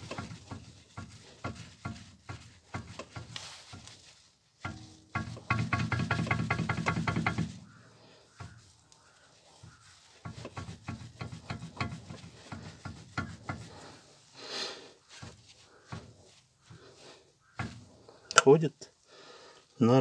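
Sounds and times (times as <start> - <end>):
car joint clicking and knocking: 0.0 - 3.9, 4.6 - 7.8, 10.2 - 13.8, 17.5 - 18.4.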